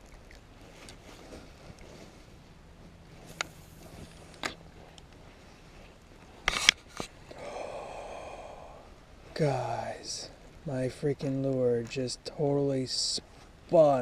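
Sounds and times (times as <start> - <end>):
fishing tackle clicks and knocks: 3.3 - 5.2.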